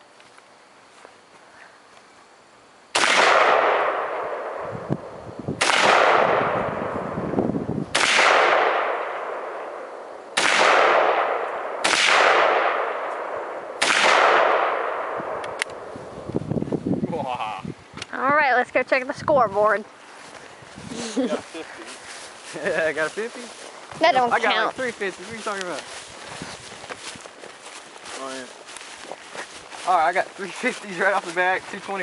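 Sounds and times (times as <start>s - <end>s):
rifle shots with echo: 2.9s - 4.7s, 5.6s - 7.1s, 7.9s - 15.9s.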